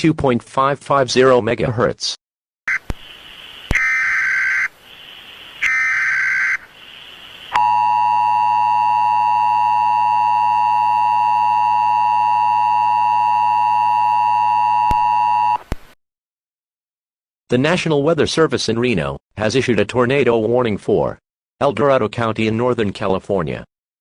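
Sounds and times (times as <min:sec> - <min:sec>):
buzzy data bursts: 0:02.7 - 0:07.6.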